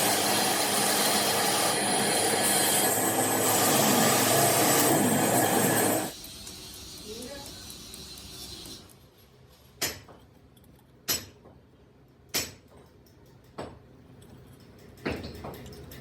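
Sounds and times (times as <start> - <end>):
hammer striking metal: 11.1 - 11.4, 12.3 - 13.8.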